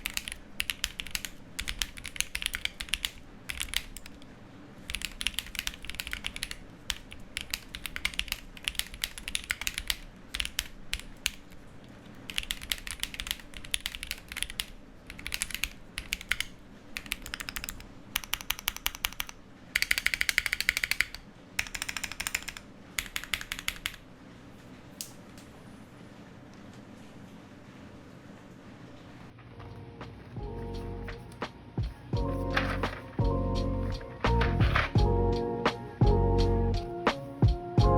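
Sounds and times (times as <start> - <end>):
mechanical keyboard typing: 0.0 - 11.6, 12.3 - 24.0.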